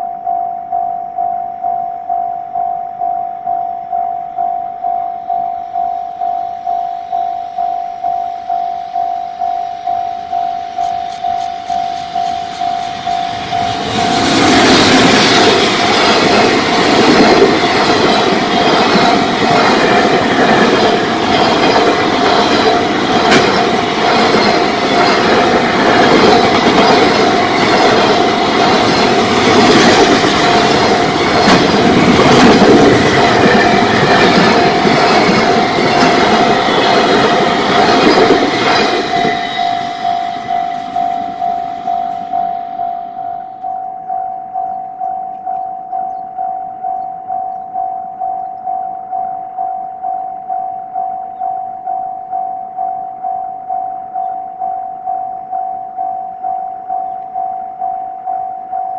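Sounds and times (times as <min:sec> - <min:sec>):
level-crossing warning bell: 0:00.0 - 0:58.9
freight train rattling past: 0:06.6 - 0:44.8.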